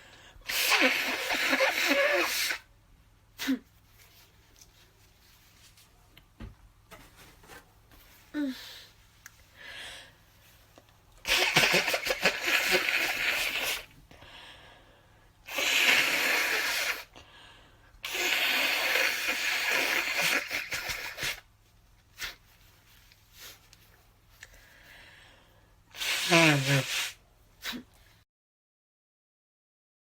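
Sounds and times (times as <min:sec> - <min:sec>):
person blowing congested nose: 0:00.0 - 0:02.7, 0:11.2 - 0:14.0, 0:15.5 - 0:17.2, 0:18.0 - 0:21.5, 0:22.2 - 0:22.5, 0:25.9 - 0:27.9.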